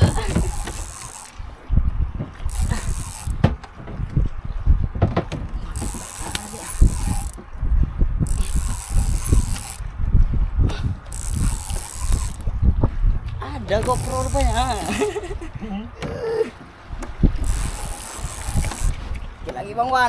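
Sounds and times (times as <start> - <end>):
fishing reel ratcheting: 0.0 - 1.4, 2.5 - 3.4, 5.7 - 7.4, 8.2 - 9.9, 11.1 - 12.5, 13.7 - 15.2, 17.4 - 19.0
low bumps and knocks: 0.0 - 14.0.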